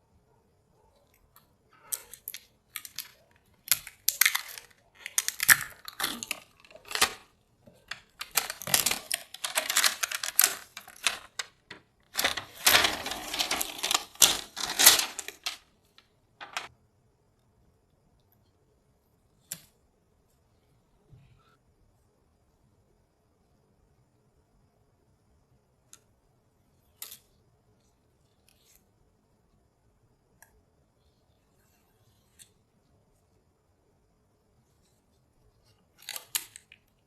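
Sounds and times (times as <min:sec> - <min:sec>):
packaging rustling and scraping: 0:04.2 - 0:15.6, 0:16.4 - 0:16.7.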